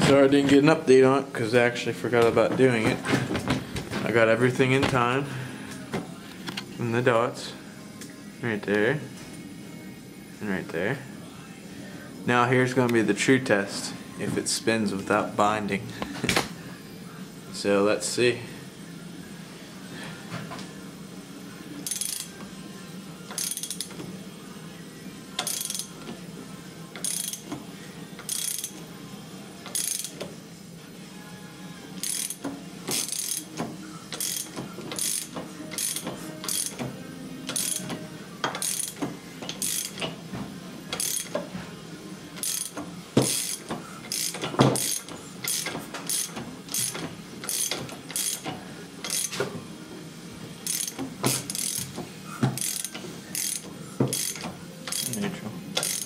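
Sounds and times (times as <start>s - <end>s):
ratchet wrench clicking: 21.8s - 22.3s, 23.3s - 24.0s, 25.4s - 25.9s, 27.0s - 27.5s, 28.2s - 28.7s, 29.7s - 30.2s, 32.0s - 36.8s, 37.5s - 37.9s, 38.5s - 40.1s, 40.9s - 41.4s, 42.4s - 49.4s, 50.6s - 51.9s, 52.6s - 55.2s, 55.8s - 56.0s.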